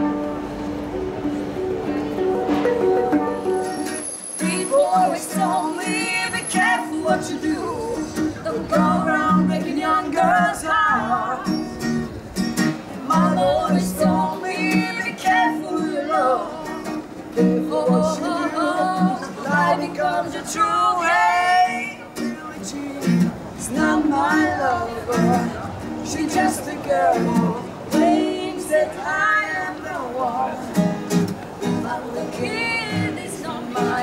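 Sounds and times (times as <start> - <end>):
plucked string instrument: 0.0 - 34.0
person singing: 4.4 - 11.7, 13.0 - 30.8.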